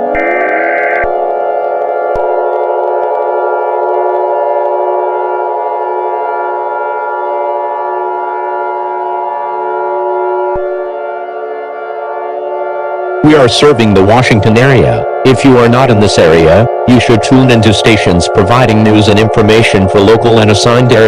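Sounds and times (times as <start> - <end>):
civil defense siren wailing: 0.0 - 21.0.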